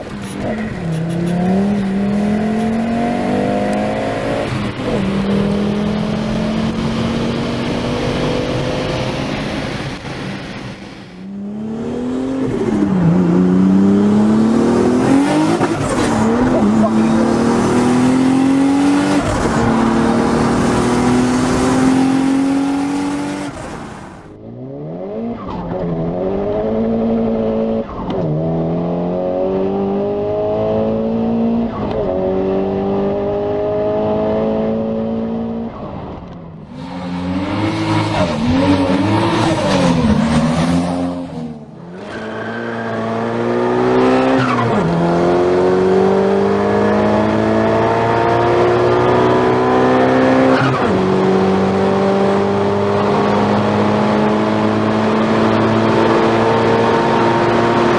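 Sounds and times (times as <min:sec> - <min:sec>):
car engines accelerating hard: 0:00.0 - 0:57.9.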